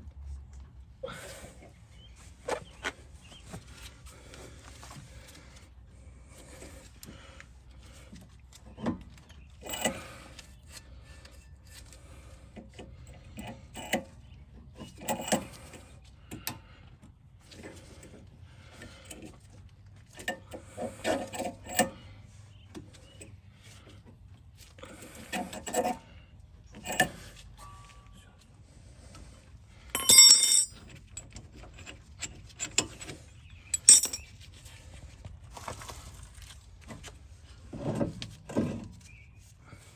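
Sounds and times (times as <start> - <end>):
ringing metal clatter: 30.0 - 31.2, 33.7 - 34.4
metal tools clinking and rattling: 30.0 - 34.7.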